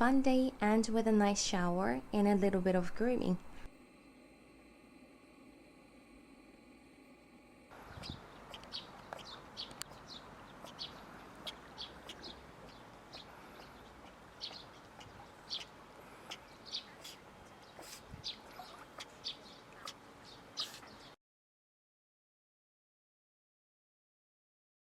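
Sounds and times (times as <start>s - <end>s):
steady background hiss: 0.3s - 21.2s
small birds chirping: 7.7s - 21.2s.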